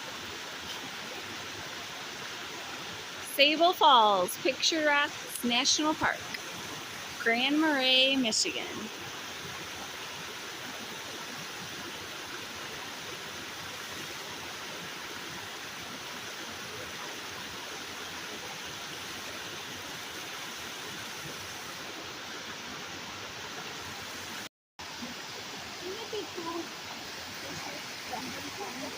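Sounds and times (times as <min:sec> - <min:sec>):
waterfall rushing: 0:00.0 - 0:28.9.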